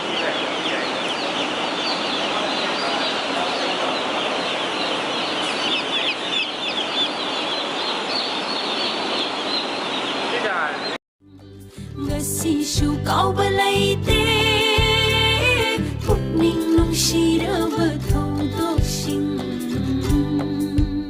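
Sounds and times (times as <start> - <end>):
chicks peeping: 0.0 - 10.8
steady background noise: 0.0 - 11.0.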